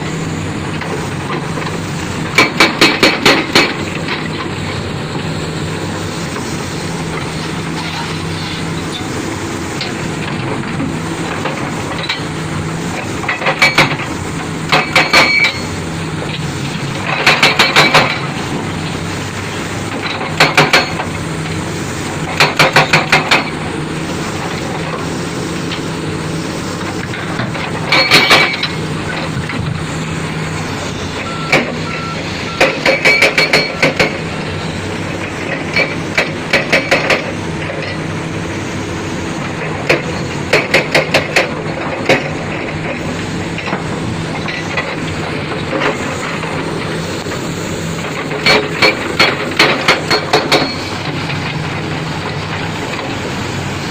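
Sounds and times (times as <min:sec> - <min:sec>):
construction machinery diesel hum: 0:00.0 - 0:53.9
rapid sharp metallic knocks: 0:02.4 - 0:03.9, 0:17.1 - 0:18.2, 0:20.0 - 0:21.1, 0:22.4 - 0:23.6, 0:32.6 - 0:34.2, 0:35.6 - 0:37.3, 0:39.9 - 0:42.4, 0:48.1 - 0:51.2.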